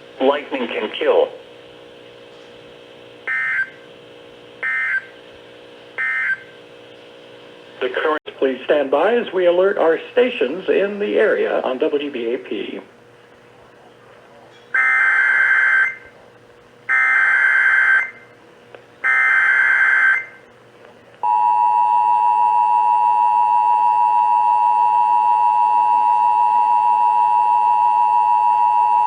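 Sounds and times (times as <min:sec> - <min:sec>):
steady two-tone alert signal: 0:03.3 - 0:03.8, 0:04.6 - 0:05.1, 0:06.0 - 0:06.5, 0:14.8 - 0:16.1, 0:19.0 - 0:20.4, 0:21.2 - 0:29.0.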